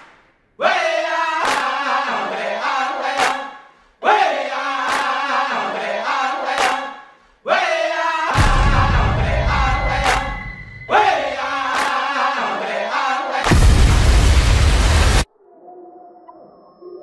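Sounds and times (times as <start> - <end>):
chanted vocal phrase: 7.5 - 13.4
sharp percussion hits: 8.4 - 11.8.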